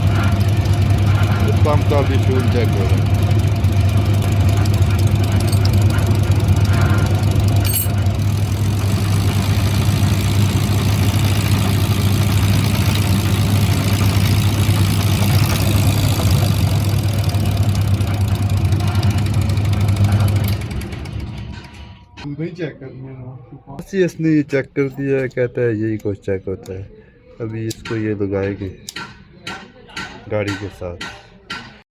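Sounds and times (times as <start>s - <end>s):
machine low hum: 0.0s - 22.3s.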